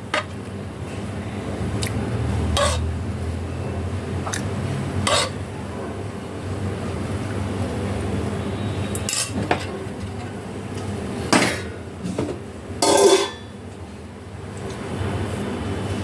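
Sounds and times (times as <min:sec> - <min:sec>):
utensil scraping pot: 0:02.5 - 0:03.0, 0:05.0 - 0:05.4
metal utensils clinking on pot: 0:09.0 - 0:10.3, 0:12.8 - 0:13.5.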